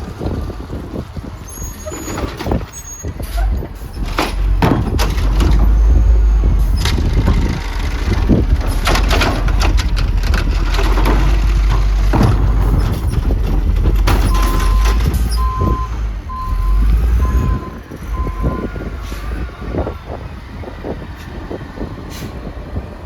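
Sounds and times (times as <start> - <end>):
garbage truck running: 0.0 - 23.0
wind rumble on microphone: 0.0 - 23.0
sharp metal clanks and bangs: 3.4 - 15.7.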